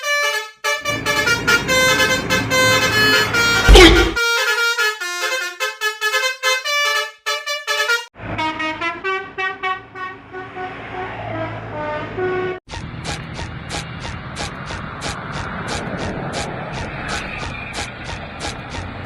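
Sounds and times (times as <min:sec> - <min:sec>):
multi-tone bus horn tune: 0:00.0 - 0:19.0
low engine hum: 0:00.9 - 0:04.2.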